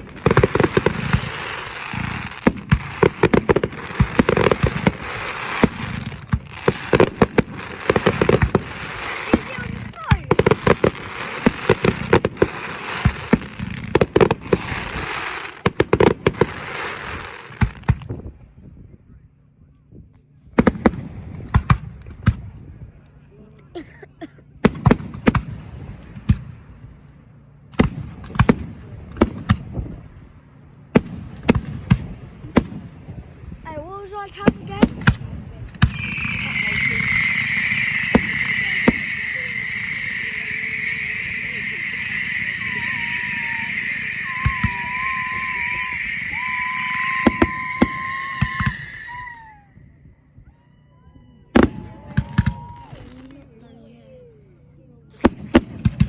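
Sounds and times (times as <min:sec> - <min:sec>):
fireworks bangs: 0:00.0 - 0:18.3, 0:20.6 - 0:22.6, 0:27.7 - 0:30.1, 0:30.9 - 0:33.2, 0:34.3 - 0:49.9, 0:51.5 - 0:53.6, 0:55.2 - 0:56.0.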